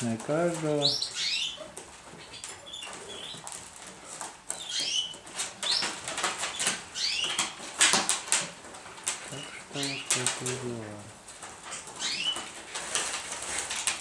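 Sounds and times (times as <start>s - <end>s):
pigeons flapping wings: 5.2s - 11.0s.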